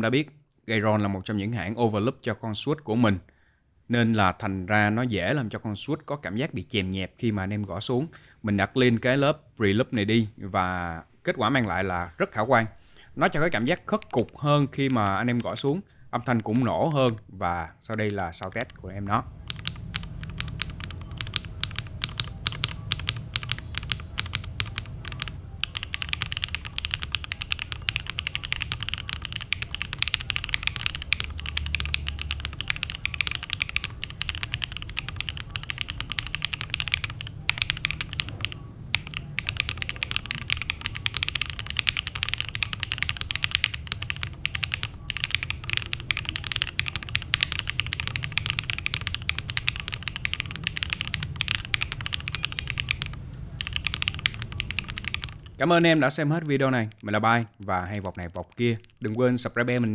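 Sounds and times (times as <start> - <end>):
fast typing on mechanical keyboard: 18.1 - 55.9.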